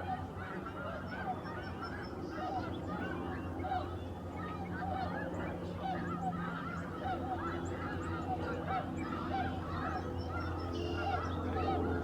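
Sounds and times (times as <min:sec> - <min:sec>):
geese honking: 0:10.8 - 0:11.8.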